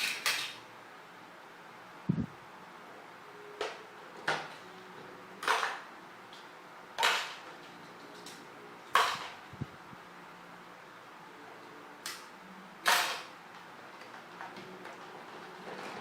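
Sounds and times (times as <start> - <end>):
plastic toy pieces clacking: 0.0 - 0.6.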